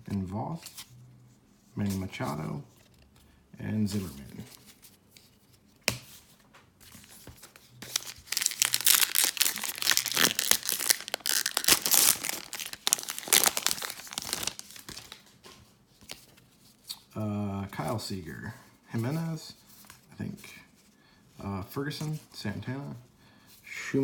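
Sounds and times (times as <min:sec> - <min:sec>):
wrapper tearing and crinkling: 0:07.8 - 0:15.3.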